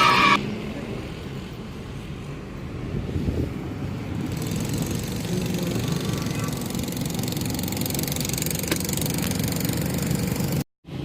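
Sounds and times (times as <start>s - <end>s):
small vehicle engine running: 3.9s - 10.6s.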